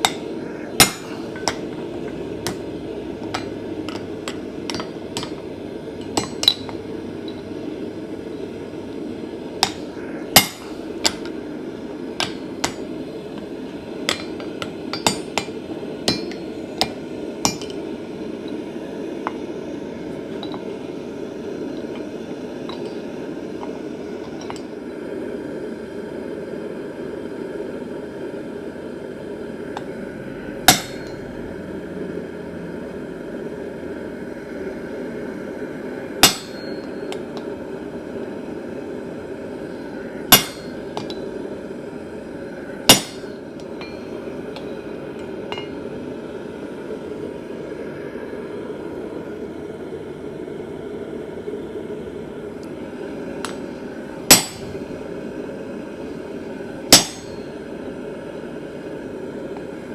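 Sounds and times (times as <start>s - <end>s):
hammer striking steel: 0.0s - 7.4s, 9.6s - 11.5s, 12.2s - 18.6s, 20.3s - 20.8s, 22.7s - 24.7s, 30.6s - 31.3s, 36.2s - 37.5s, 40.3s - 41.4s, 42.9s - 45.9s, 53.4s - 55.0s, 56.9s - 57.6s.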